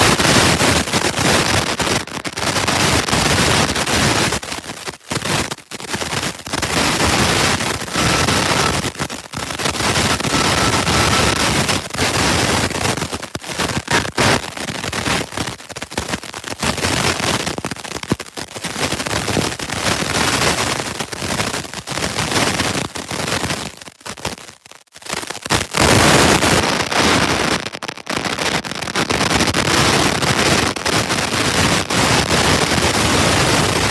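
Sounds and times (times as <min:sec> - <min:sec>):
loud crackly rush of noise: 0:00.0 - 0:21.0, 0:25.0 - 0:33.9
faint steady tone: 0:07.8 - 0:08.8.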